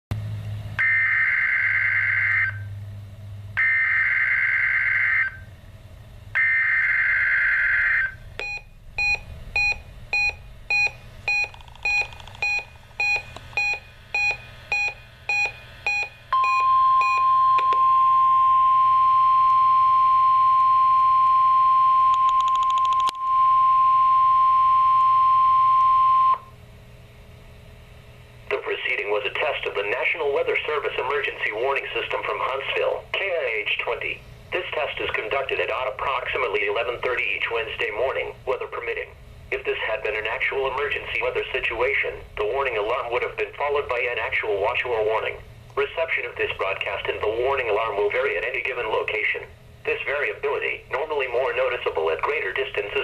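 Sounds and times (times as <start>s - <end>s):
steady alarm tone: 0.8s - 2.7s, 3.6s - 5.5s, 6.3s - 26.5s
short beeps: 8.4s - 26.5s
radio hiss: 28.5s - 41.8s.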